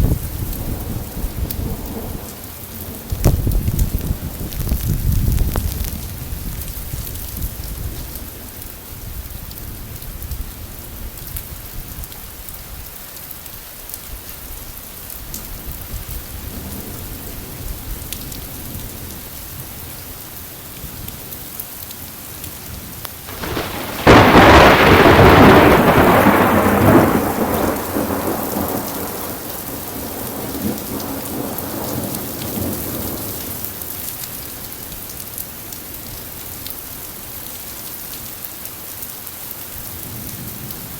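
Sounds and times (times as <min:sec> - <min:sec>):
thunder crack and rumble: 0:00.0 - 0:08.1, 0:23.3 - 0:33.7
steady rain falling: 0:00.0 - 0:40.9.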